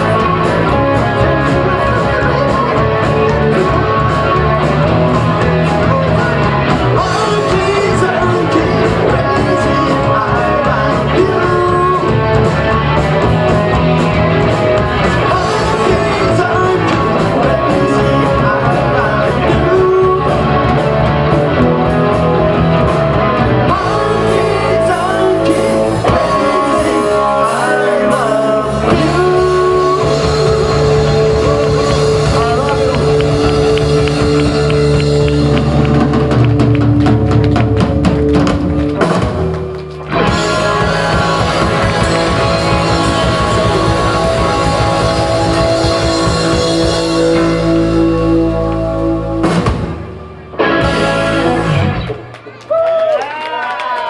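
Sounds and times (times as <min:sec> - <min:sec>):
person singing: 0:00.0 - 0:49.9
drums: 0:00.0 - 0:54.0
electric guitar: 0:00.0 - 0:54.0.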